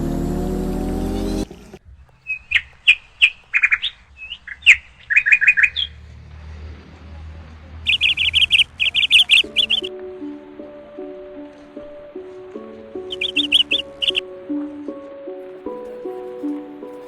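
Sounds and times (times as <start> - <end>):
small birds chirping: 1.1 - 6.2, 7.8 - 10.0, 12.1 - 14.6, 15.5 - 17.0.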